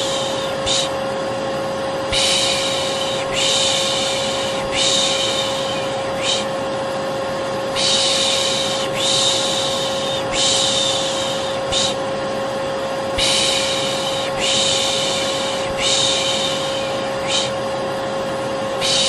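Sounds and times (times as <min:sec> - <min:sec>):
person shushing: 0:00.0 - 0:01.0, 0:02.1 - 0:06.5, 0:07.8 - 0:12.0, 0:13.2 - 0:17.6, 0:18.8 - 0:19.0
vacuum cleaner humming: 0:00.0 - 0:19.0.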